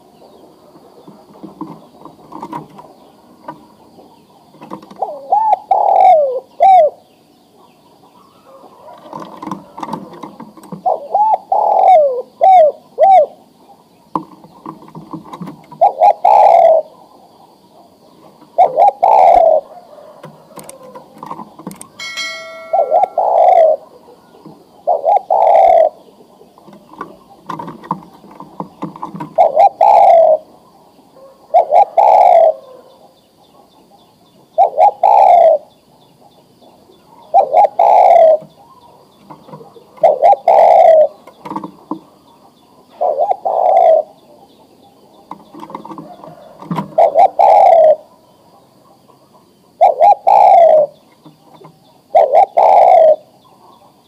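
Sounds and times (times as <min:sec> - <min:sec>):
dove cooing: 0:00.0 - 0:33.7, 0:34.4 - 0:35.8, 0:36.7 - 0:54.0.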